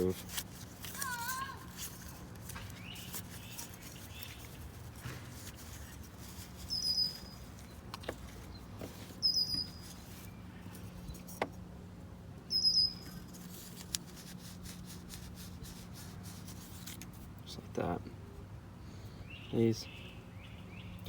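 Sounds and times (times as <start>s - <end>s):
bird chirping: 2.5s - 4.7s, 5.5s - 11.3s, 12.4s - 13.3s, 19.1s - 21.0s.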